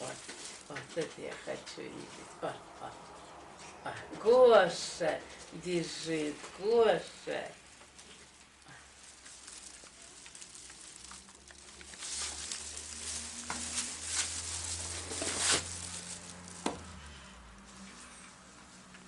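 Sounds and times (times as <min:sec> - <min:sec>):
scratchy rustling: 0:07.6 - 0:18.9.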